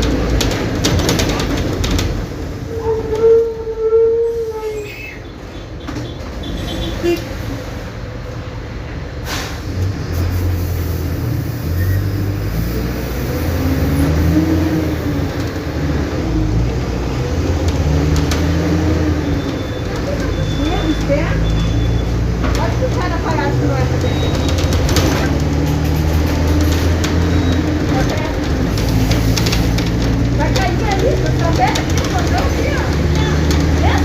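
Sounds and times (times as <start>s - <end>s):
bus diesel engine pulling away: 7.3s - 34.0s.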